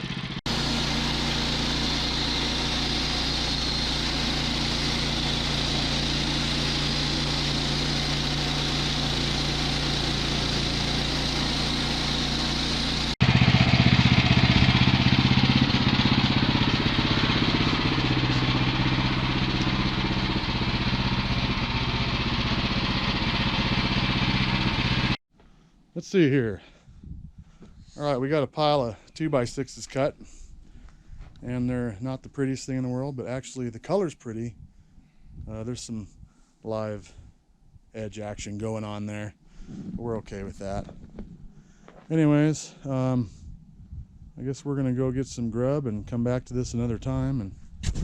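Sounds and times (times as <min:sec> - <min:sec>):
sawmill gas engine running: 0:00.0 - 0:25.2.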